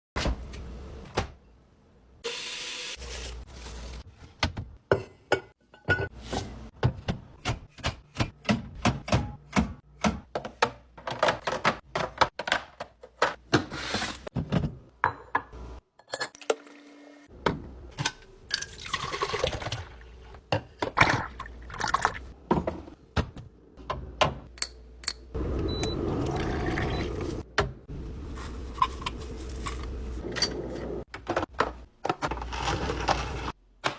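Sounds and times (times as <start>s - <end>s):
liquid pouring: 18.6s - 19.9s, 26.2s - 27.4s.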